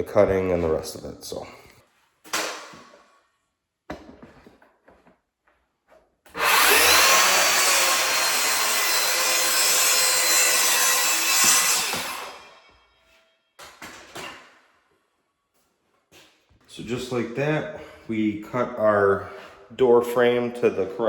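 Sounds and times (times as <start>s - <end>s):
power saw cutting wood: 6.3s - 13.0s.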